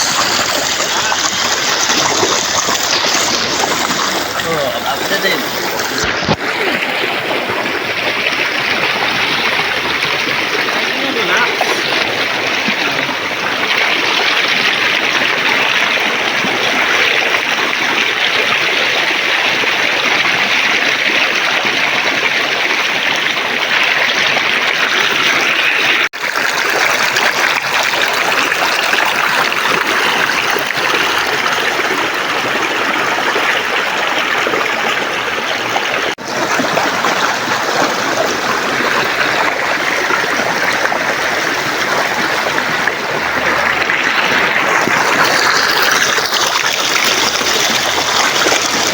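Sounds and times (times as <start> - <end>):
river flowing over rocks: 0.0 - 48.9.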